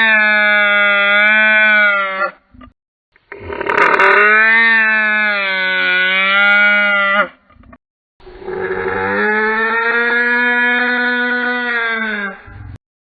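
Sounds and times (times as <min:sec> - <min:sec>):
dinosaur call sound effect: 0:03.4 - 0:07.4.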